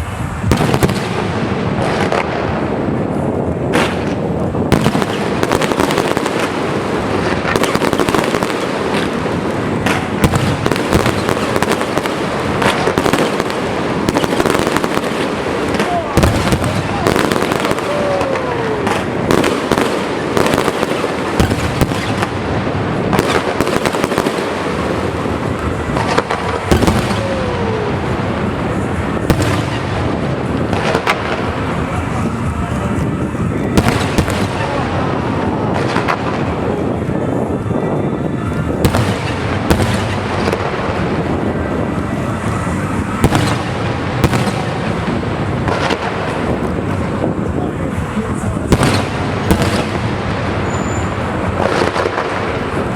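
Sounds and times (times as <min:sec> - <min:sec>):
fireworks bangs and crackling: 0:00.0 - 0:52.9
falling firework whistles: 0:15.8 - 0:22.3, 0:50.6 - 0:51.3.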